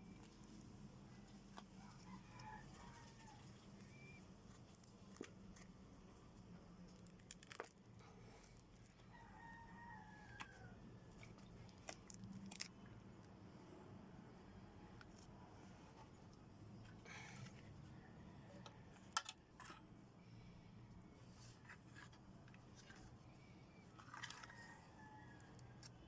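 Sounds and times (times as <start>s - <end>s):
low room hum: 0.0s - 26.0s
faint distant bird calls: 1.1s - 4.8s.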